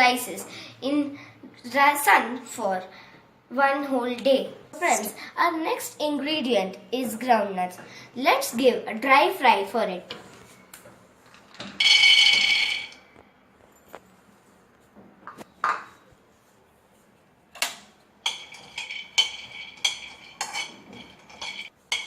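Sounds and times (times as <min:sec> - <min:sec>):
metal pan ringing: 0:11.8 - 0:13.0
spatula scraping metal pan: 0:18.3 - 0:22.0.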